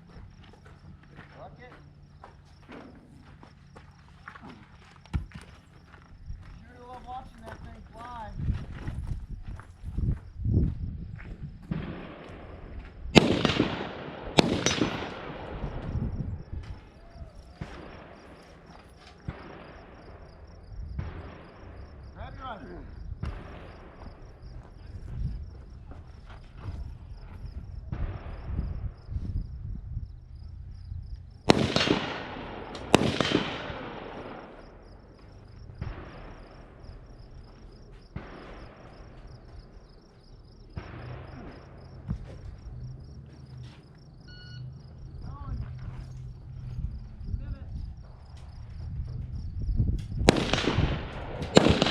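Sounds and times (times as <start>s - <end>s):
gunshots with long echo: 11.6s - 25.0s, 27.8s - 29.1s, 31.3s - 42.7s, 50.2s - 51.9s.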